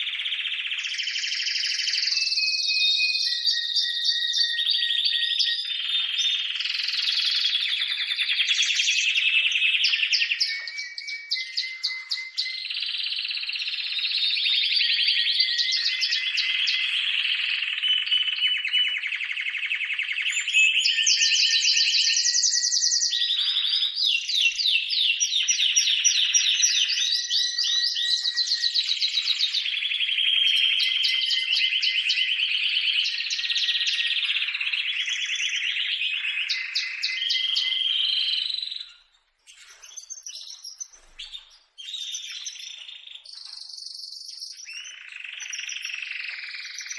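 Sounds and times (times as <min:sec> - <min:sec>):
faint bird chirps: 0:00.0 - 0:46.9
rapid trilled bird calls: 0:15.3 - 0:46.9.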